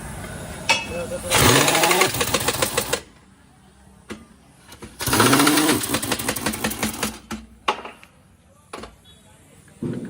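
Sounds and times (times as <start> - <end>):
impact wrench rattling: 4.8 - 7.4.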